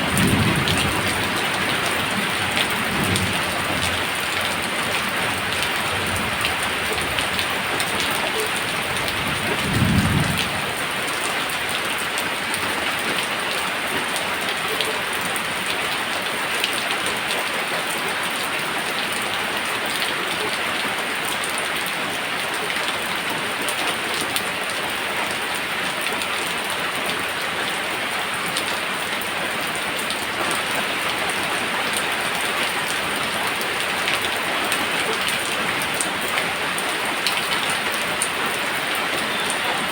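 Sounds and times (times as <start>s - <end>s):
low thunder rumble: 0.0s - 7.7s, 9.0s - 10.9s
steady rain: 0.0s - 39.9s.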